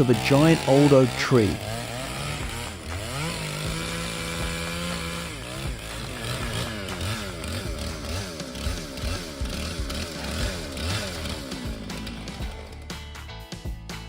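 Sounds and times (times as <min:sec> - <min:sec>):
chainsaw cutting wood: 0:00.0 - 0:14.0.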